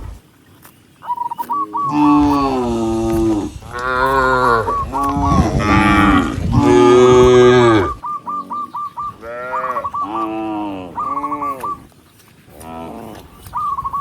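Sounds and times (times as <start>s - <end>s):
cattle mooing: 1.8s - 8.0s, 9.2s - 11.8s.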